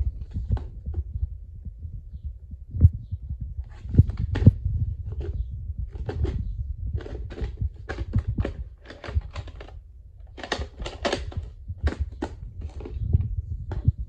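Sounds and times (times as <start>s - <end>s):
low handling rumble: 0.0s - 8.8s, 11.5s - 14.0s
hard plastic clicks and clacks: 7.0s - 13.9s.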